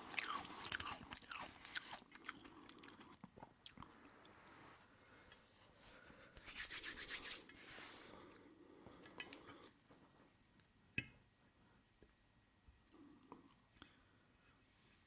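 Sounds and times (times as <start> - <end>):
quick scraping rub: 6.4 - 8.0.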